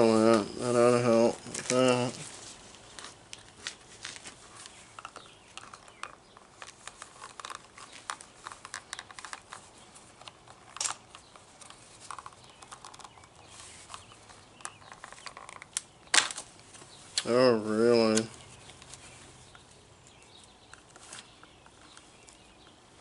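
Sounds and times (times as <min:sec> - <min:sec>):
small objects clicking and tapping: 0:04.9 - 0:16.4.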